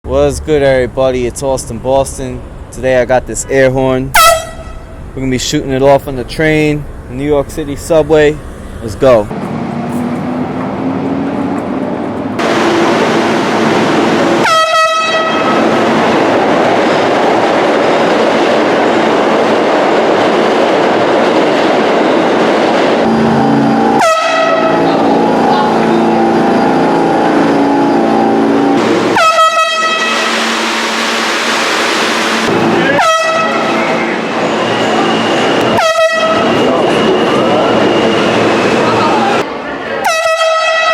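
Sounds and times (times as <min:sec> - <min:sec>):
subway train rumbling: 0:00.0 - 0:40.9
air horn blasts: 0:04.1 - 0:04.9, 0:14.4 - 0:15.6, 0:23.0 - 0:30.9, 0:32.8 - 0:34.1, 0:35.7 - 0:36.6, 0:40.0 - 0:40.9.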